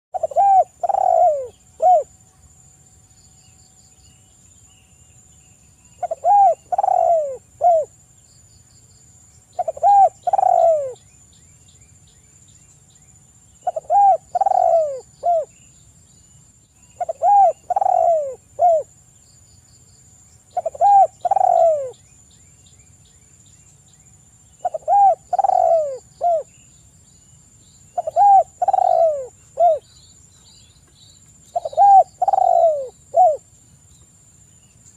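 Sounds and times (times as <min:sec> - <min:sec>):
dove cooing: 0:00.1 - 0:02.1, 0:06.0 - 0:07.9, 0:09.6 - 0:11.0, 0:13.6 - 0:15.5, 0:17.0 - 0:18.9, 0:20.6 - 0:22.0, 0:24.6 - 0:26.5, 0:28.0 - 0:29.9, 0:31.5 - 0:33.5.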